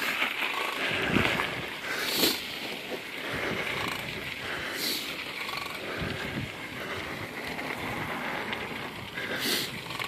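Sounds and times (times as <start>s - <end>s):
steady outdoor rumble: 0.0s - 10.0s
wind buffeting microphone: 0.8s - 2.0s, 5.6s - 10.0s.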